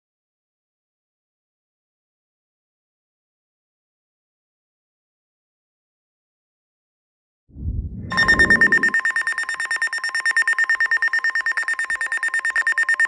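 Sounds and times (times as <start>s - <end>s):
low rumble: 7.5s - 9.0s
rapidly pulsing high beep: 7.8s - 9.1s.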